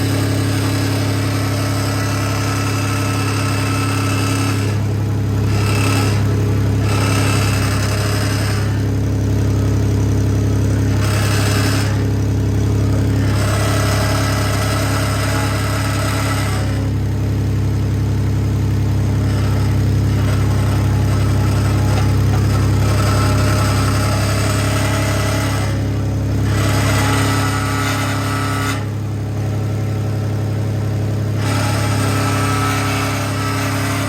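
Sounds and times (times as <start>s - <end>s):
car engine running: 0.0s - 34.0s.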